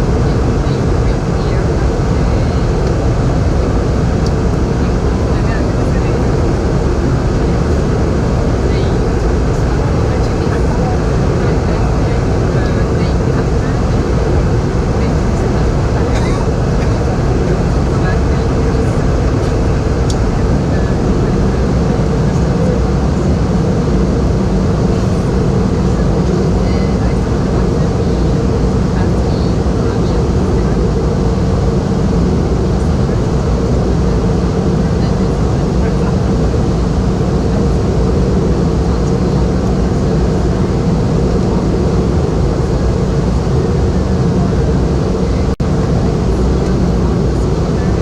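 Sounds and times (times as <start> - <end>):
airliner cabin drone: 0.0 - 48.0.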